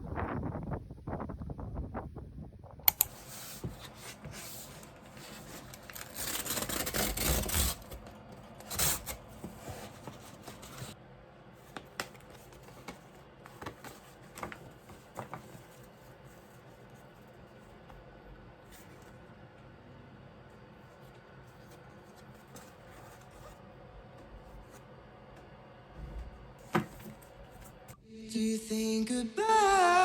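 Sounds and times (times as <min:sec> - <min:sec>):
paper rustling: 0:03.1 - 0:11.0, 0:11.6 - 0:17.2, 0:21.0 - 0:23.7.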